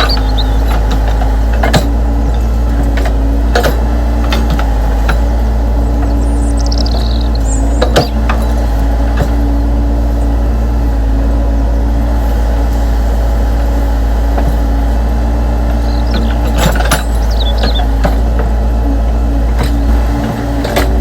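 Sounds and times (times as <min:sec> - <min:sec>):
model excavator motor running: 0:00.0 - 0:21.0.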